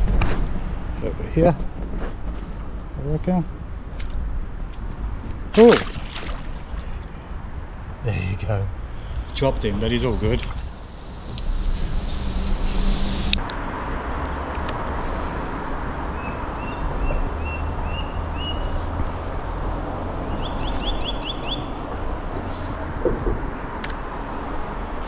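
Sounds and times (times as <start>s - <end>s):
bird chirping: 8.9s - 13.4s, 16.2s - 18.9s, 20.2s - 22.8s.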